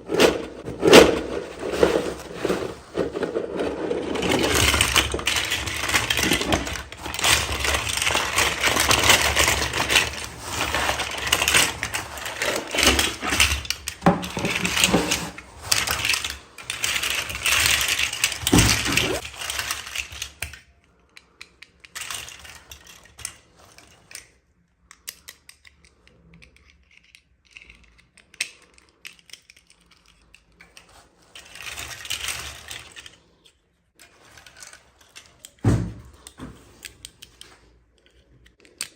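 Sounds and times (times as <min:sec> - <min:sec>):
plastic packaging rustling: 0:00.0 - 0:19.8
plastic toys clicking: 0:00.1 - 0:35.6, 0:36.2 - 0:38.9.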